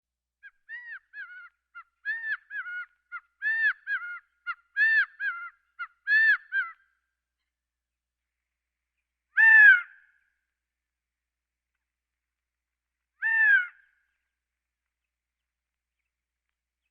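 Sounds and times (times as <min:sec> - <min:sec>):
quail calling: 0:00.6 - 0:06.8, 0:09.4 - 0:10.1, 0:13.2 - 0:13.9.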